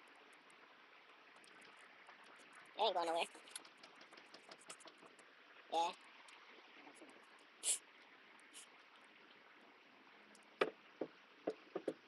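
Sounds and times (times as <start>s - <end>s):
rustling hiss: 6.8s - 8.9s
sharp knocks: 10.6s - 12.0s.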